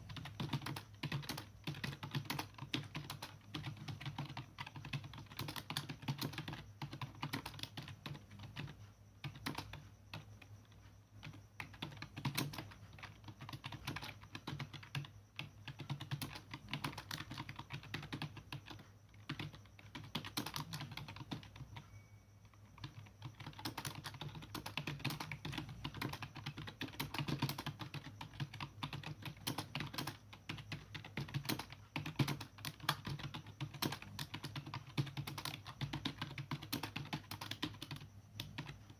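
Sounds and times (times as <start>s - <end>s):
fast typing on keyboard: 0.0s - 38.9s.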